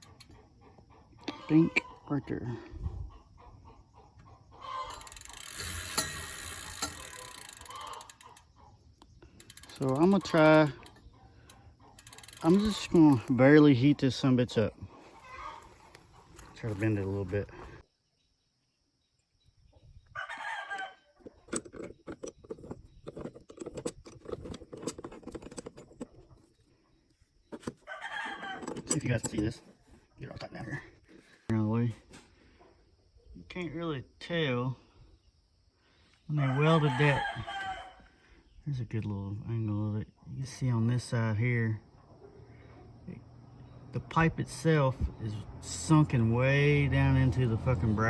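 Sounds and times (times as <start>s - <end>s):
hens cackling: 0.0s - 5.2s, 7.6s - 8.8s, 14.7s - 16.4s, 20.2s - 21.4s, 27.8s - 28.6s, 36.4s - 38.1s
hens clucking: 0.0s - 5.2s, 7.6s - 8.8s, 9.9s - 17.8s
rapid mechanical clicking: 12.0s - 13.4s.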